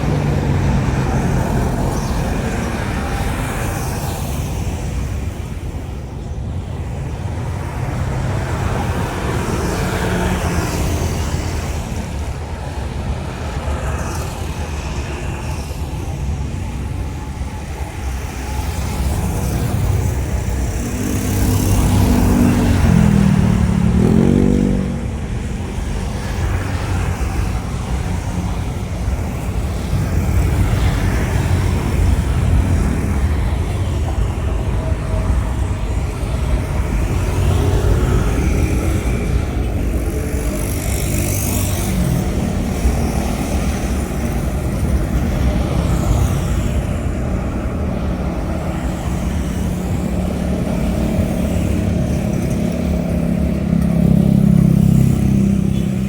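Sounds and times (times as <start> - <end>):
vehicle passing by: 18.4 - 56.0.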